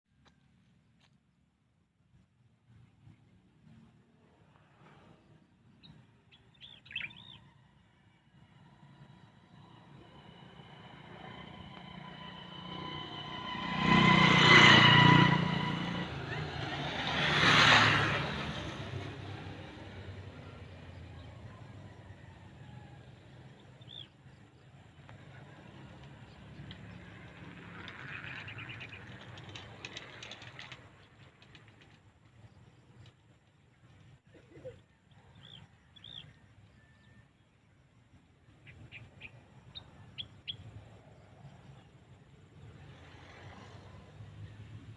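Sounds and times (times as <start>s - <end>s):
birds chirping: 5.2s - 7.7s, 32.4s - 37.5s
motor vehicle approaching: 6.6s - 37.6s, 38.2s - 44.9s
high whine: 8.4s - 16.8s.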